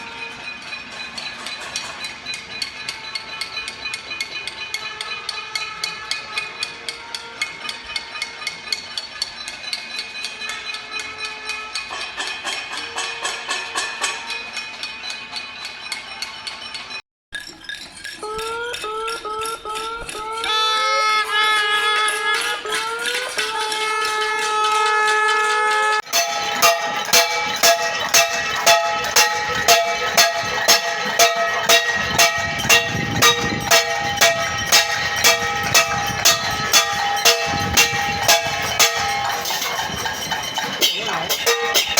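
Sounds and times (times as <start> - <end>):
long held tones: 24.0 - 41.9
metal pots and pans banged: 26.0 - 41.9.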